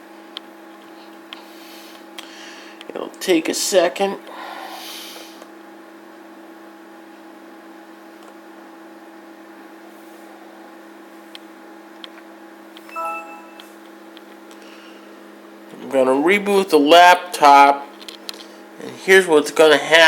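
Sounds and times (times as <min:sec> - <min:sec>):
computer equipment humming: 0:12.8 - 0:14.2
brief tone: 0:12.9 - 0:13.8.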